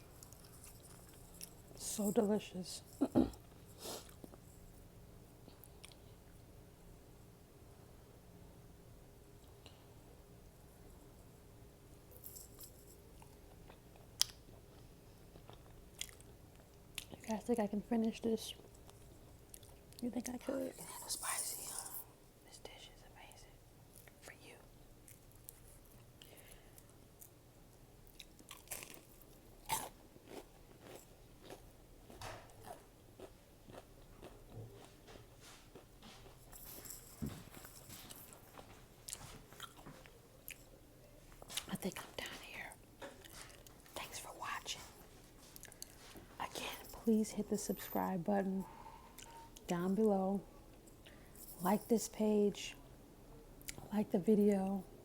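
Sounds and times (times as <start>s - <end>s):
quiet chewing: 0.0s - 2.0s, 3.0s - 4.8s, 5.4s - 6.4s, 13.1s - 17.3s, 18.0s - 22.0s, 25.0s - 27.4s, 28.0s - 47.2s, 48.6s - 49.7s, 53.6s - 53.9s
person chewing crunchy food: 13.6s - 17.2s, 28.1s - 36.8s, 38.1s - 40.7s, 45.6s - 46.0s.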